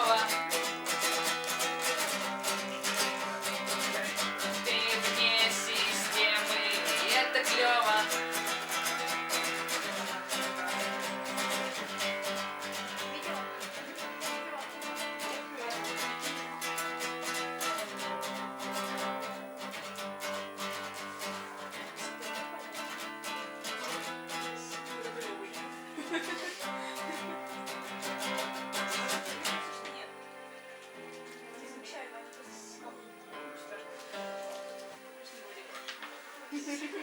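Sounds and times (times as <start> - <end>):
acoustic guitar strumming: 0.0 - 37.0.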